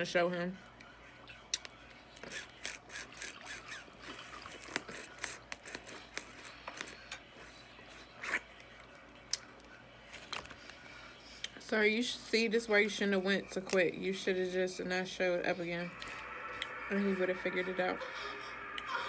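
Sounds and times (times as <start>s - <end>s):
chewing and smacking: 1.5s - 10.8s.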